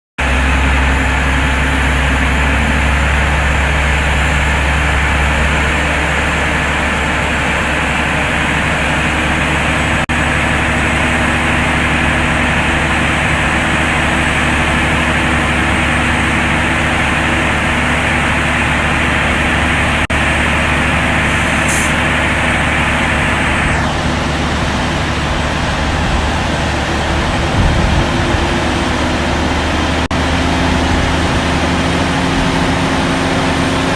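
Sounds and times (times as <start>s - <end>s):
diesel engine humming: 0.2s - 33.9s
broad hiss: 21.2s - 22.1s.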